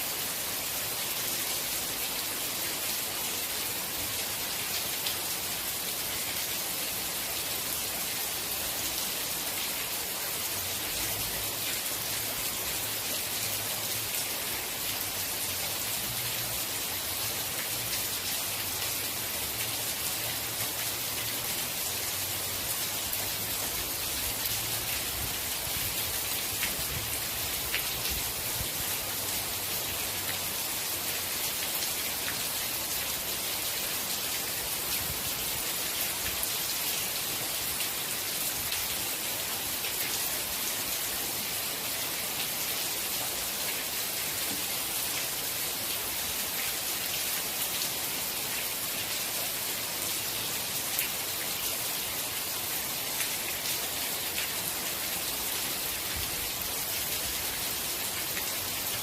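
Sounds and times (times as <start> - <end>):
rain falling: 0.0 - 59.0.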